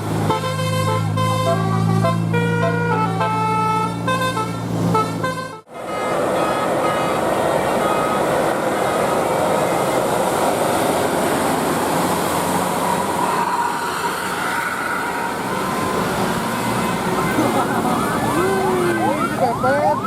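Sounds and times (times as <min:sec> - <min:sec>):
bus rumble and road noise: 0:00.0 - 0:20.0.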